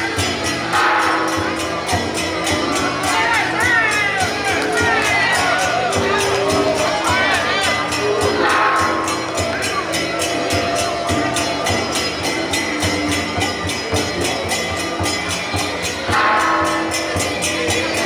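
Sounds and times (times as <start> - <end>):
cymbals beaten fast: 0.0 - 18.0
drums: 0.0 - 18.0.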